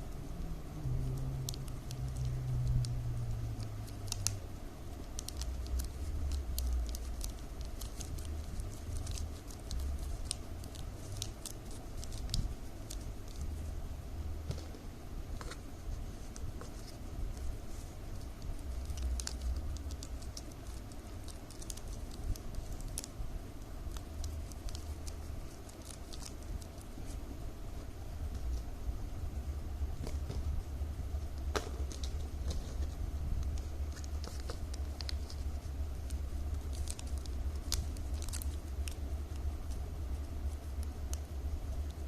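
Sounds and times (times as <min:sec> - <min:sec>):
low steady rumble: 0:00.0 - 0:42.0
plastic strips crinkling and clicking: 0:01.0 - 0:13.6, 0:18.1 - 0:27.2, 0:31.4 - 0:39.9.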